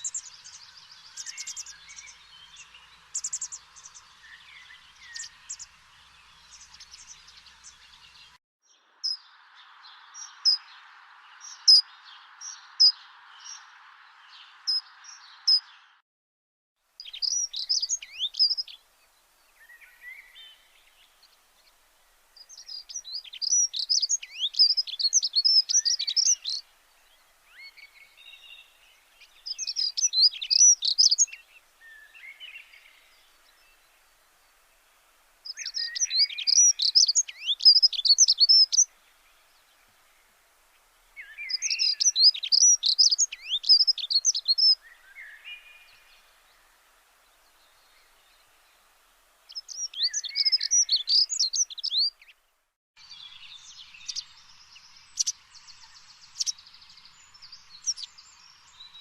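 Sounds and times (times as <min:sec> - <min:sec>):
small birds chirping: 0:00.0 - 0:16.0, 0:17.0 - 0:59.0
steady hiss: 0:16.8 - 0:50.3.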